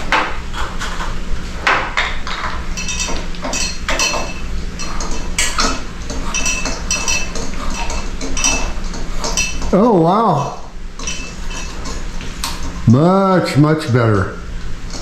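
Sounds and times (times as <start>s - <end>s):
hard objects clinking and knocking: 1.7s - 9.8s, 11.0s - 12.0s.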